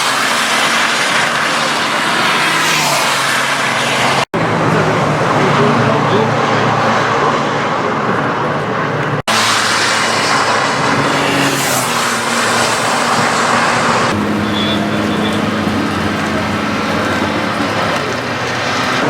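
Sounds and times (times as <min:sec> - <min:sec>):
race car engines running hard: 0:00.0 - 0:19.0
spray hissing from wet track: 0:09.3 - 0:19.0.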